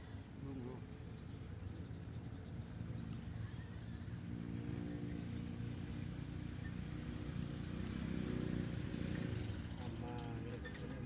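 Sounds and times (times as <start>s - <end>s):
motor engine running: 4.3s - 11.0s.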